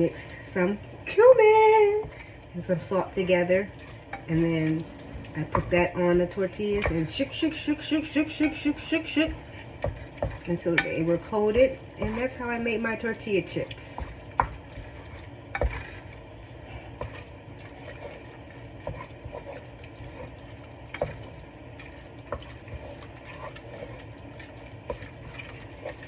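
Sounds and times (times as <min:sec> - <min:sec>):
utensil clicking against pan: 0:03.7 - 0:07.6, 0:08.2 - 0:16.2
meat sizzling in a pan: 0:06.6 - 0:26.0.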